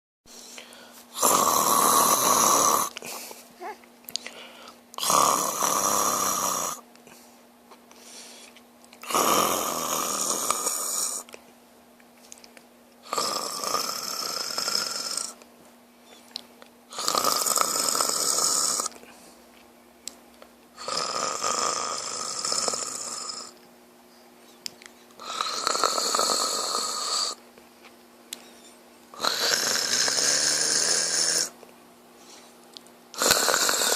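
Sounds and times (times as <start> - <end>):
man snoring loudly: 1.1 - 3.0, 5.0 - 6.8, 9.0 - 11.3, 13.0 - 15.4, 16.9 - 19.0, 20.8 - 23.6, 25.2 - 27.4, 29.2 - 31.6, 33.2 - 33.9.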